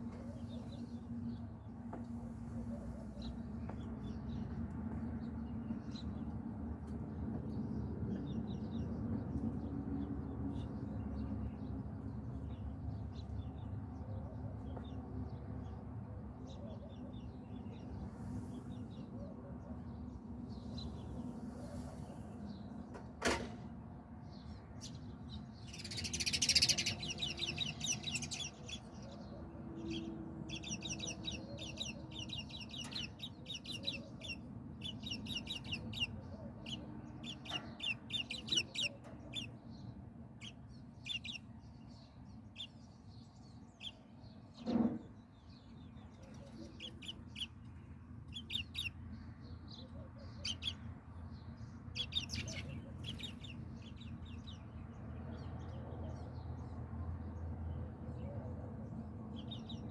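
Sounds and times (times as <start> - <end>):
small birds chirping: 24.2 - 59.9.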